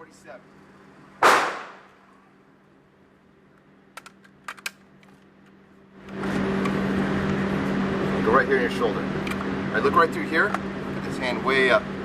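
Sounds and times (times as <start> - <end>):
loud bang: 1.2 - 1.9
rifle clicks and knocks: 3.9 - 5.6.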